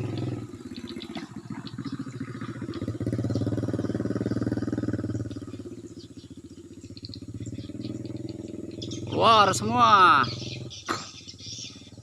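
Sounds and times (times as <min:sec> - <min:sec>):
small engine running: 0:00.0 - 0:12.0
high bird chirps: 0:05.7 - 0:12.0.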